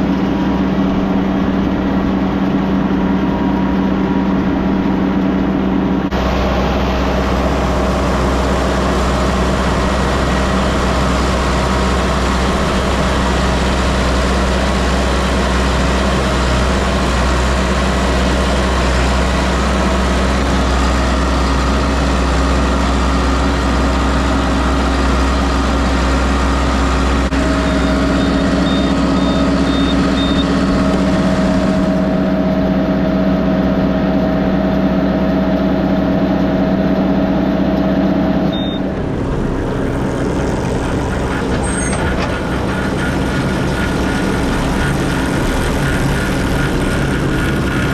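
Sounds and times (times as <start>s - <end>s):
vehicle engine humming: 0.0s - 47.9s
short high beeps: 27.7s - 30.5s, 38.5s - 38.9s.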